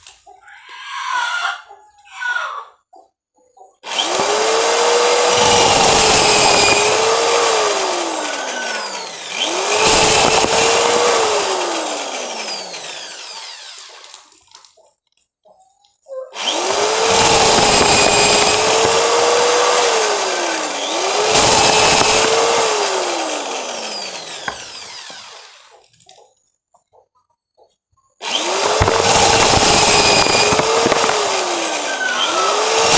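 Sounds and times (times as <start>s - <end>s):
cordless drill motor whine: 3.9s - 14.2s, 16.4s - 25.7s, 28.2s - 32.9s
corn kernels rattling: 16.6s - 25.2s, 28.3s - 32.9s.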